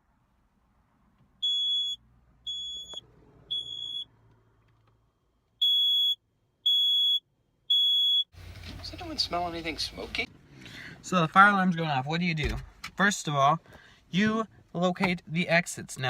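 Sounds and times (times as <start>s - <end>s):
smoke alarm beeping: 1.4s - 4.1s, 5.6s - 8.3s.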